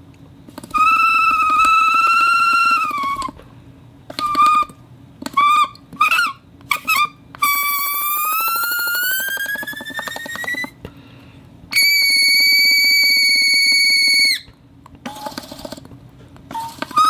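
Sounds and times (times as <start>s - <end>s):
squeaky whistle-like friction tones: 0.7s - 3.4s, 4.2s - 10.8s, 11.7s - 14.5s, 16.5s - 17.0s.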